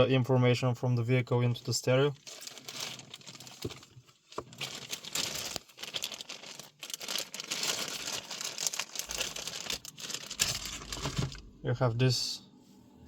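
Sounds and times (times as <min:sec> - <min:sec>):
plastic rustling and crinkling: 0:01.6 - 0:11.5.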